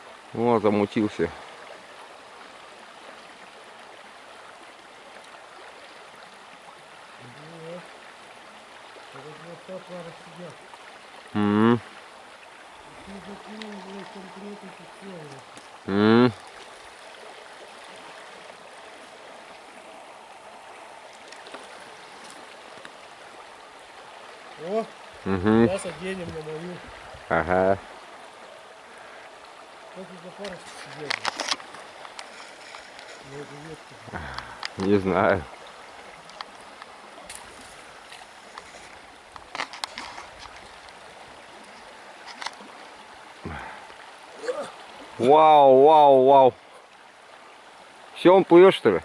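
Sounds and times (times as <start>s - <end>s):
stream water running: 0.0s - 49.0s
faint ticks: 13.4s - 14.2s, 30.4s - 33.3s, 34.2s - 34.9s, 36.2s - 41.0s.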